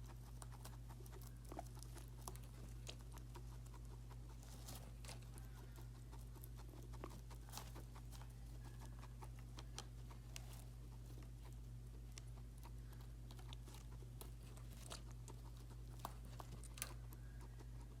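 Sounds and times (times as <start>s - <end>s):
guinea pig drinking clicks: 0.0s - 18.0s
steady low hum: 0.0s - 18.0s.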